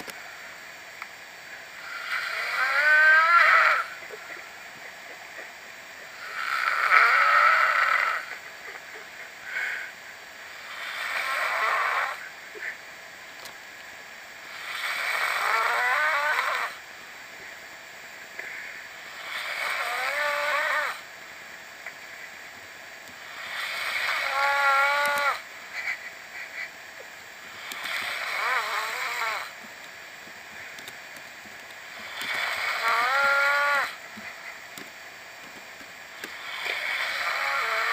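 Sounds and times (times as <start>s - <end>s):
whistling snores: 1.8s - 3.9s, 10.7s - 12.3s, 14.6s - 16.8s, 19.2s - 21.0s, 23.4s - 25.4s, 27.6s - 29.5s, 32.1s - 34.0s, 36.4s - 37.9s.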